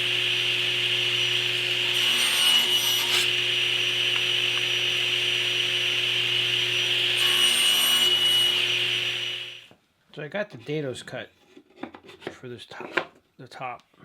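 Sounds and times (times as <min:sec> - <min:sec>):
table saw cutting wood: 0:00.0 - 0:09.7.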